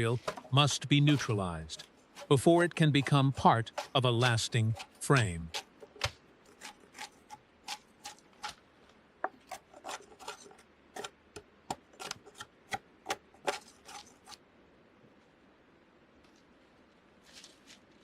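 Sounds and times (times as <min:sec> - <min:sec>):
bark scraped off a log: 0:00.0 - 0:08.6, 0:09.3 - 0:11.1, 0:12.0 - 0:14.4.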